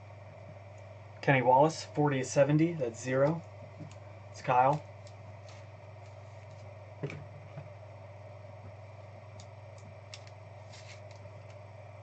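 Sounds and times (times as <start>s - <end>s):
low room hum: 0.0s - 12.0s.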